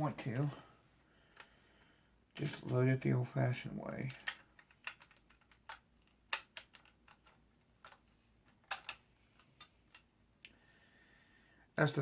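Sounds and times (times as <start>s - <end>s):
rifle cartridges clicking: 4.2s - 10.1s.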